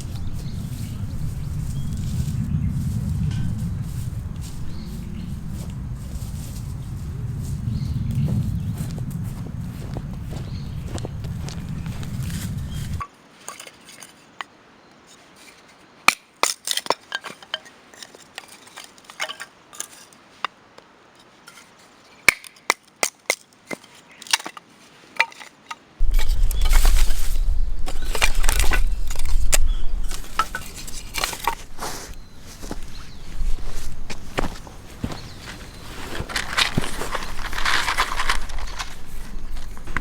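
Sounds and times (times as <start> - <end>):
loud low rumble: 0.0 - 13.0, 26.0 - 40.0
hard objects clicking and clinking: 36.1 - 40.0.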